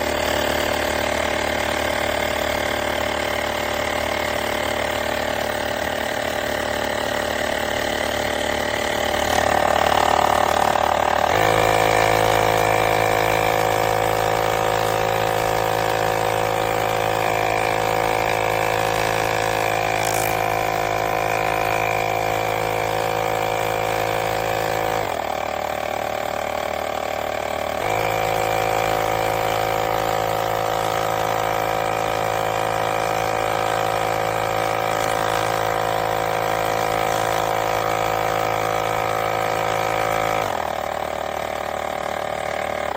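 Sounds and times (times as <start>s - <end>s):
electric air compressor humming: 0.0s - 42.9s.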